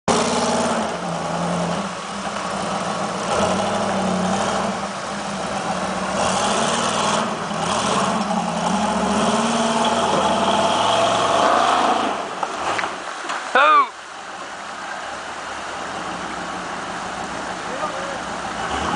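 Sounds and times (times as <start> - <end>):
truck engine rising and falling: 0.0 - 13.3.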